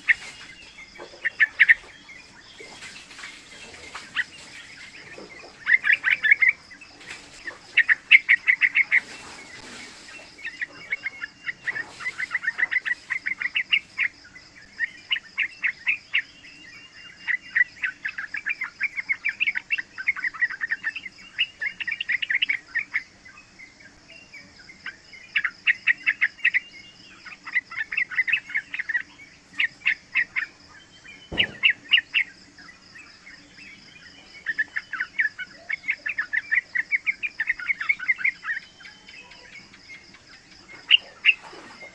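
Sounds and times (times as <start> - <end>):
bird chattering song: 0.0 - 41.9
thump: 31.3 - 31.8.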